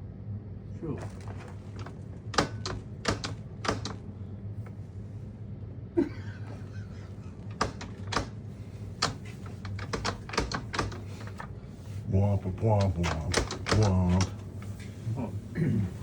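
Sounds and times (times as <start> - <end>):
metallic clicks of safe dial: 9.0 - 11.5.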